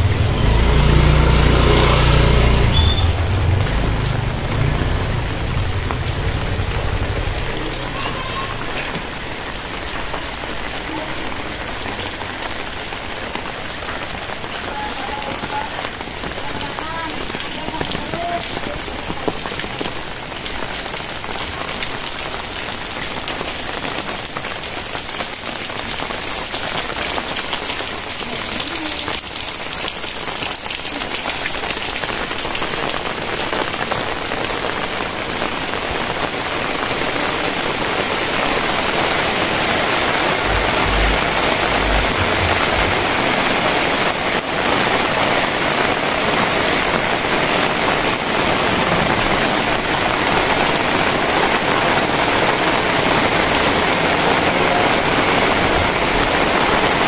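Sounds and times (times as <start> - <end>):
heavy rain falling: 0.0 - 57.0
low thumps: 40.3 - 43.7.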